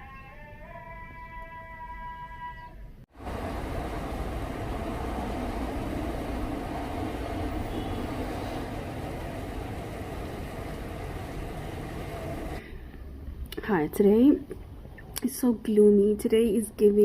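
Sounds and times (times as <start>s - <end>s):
low rumble with faint hum: 3.2s - 13.7s.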